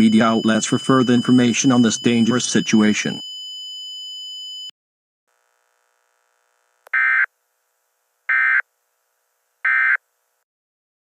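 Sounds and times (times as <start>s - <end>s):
digital data tone bursts: 0.0s - 3.2s.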